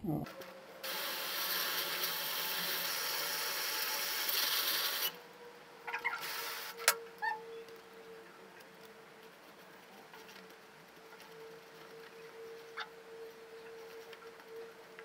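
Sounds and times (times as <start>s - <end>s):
hissing rasp of chain cleaning: 0.8s - 5.2s, 6.2s - 6.9s.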